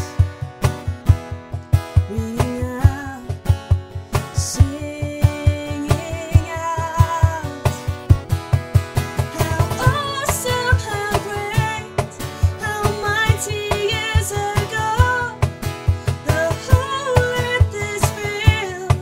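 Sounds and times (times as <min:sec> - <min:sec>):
acoustic guitar strumming: 0:00.0 - 0:19.0
woman singing: 0:02.1 - 0:03.4, 0:04.3 - 0:07.9, 0:09.2 - 0:19.0.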